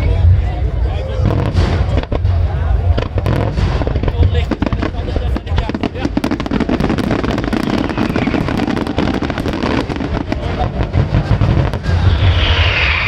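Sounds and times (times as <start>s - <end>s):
fireworks bangs and crackles: 0.0s - 13.0s
low rumble: 10.8s - 13.0s.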